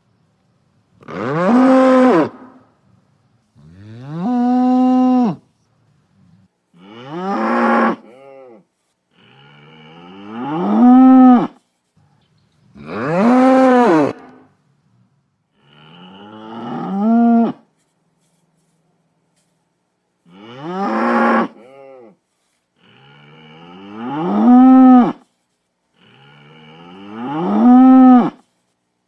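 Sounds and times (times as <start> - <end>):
bull bellowing: 1.0 - 2.6, 6.8 - 11.6, 12.8 - 14.5, 15.6 - 17.7, 20.3 - 22.2, 22.8 - 25.2, 26.0 - 28.4.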